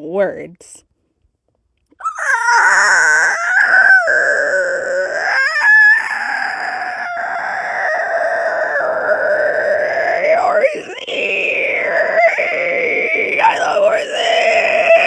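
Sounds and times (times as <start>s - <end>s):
person making raspy animal-like screech: 2.0s - 15.0s.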